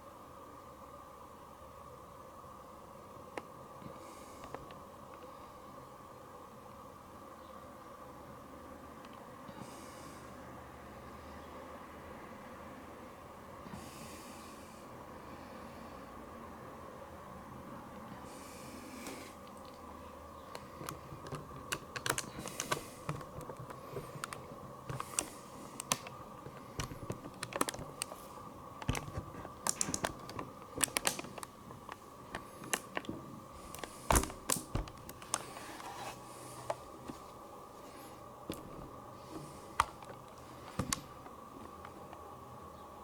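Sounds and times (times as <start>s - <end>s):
faint electrical hum: 0.0s - 43.0s
hands handling small objects: 20.5s - 42.2s.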